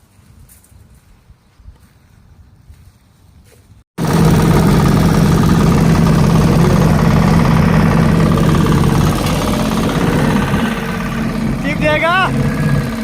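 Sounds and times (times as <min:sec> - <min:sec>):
machine engine running: 0:04.0 - 0:13.0.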